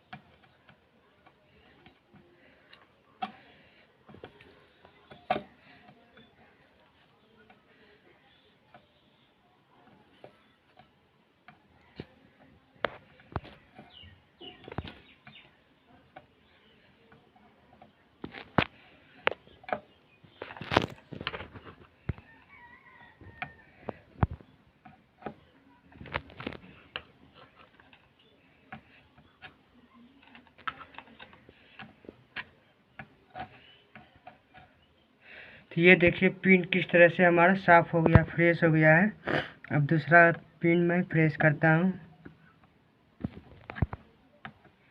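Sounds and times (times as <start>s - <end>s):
hand tools clicking on circuit board: 8.3s - 35.0s.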